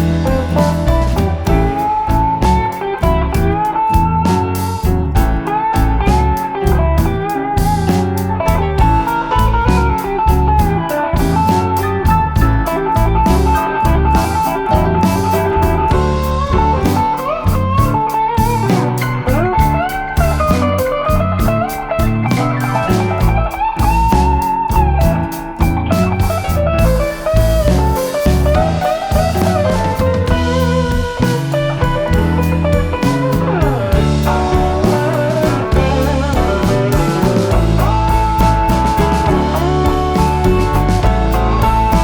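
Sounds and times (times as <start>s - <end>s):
bass and drums: 0.0s - 42.0s
blues electric guitar lead: 0.0s - 42.0s.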